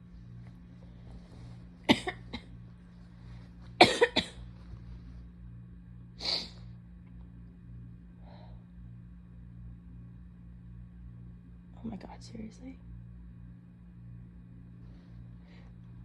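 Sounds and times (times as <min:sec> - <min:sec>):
person sneezing: 0:06.2 - 0:06.6
breathy sniff: 0:06.2 - 0:06.7.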